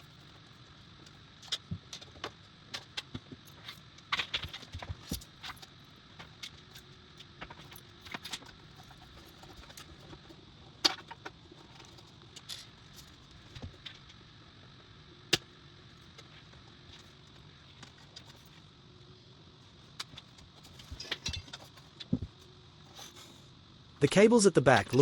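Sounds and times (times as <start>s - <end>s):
computer parts and screws clattering: 20.0s - 22.0s.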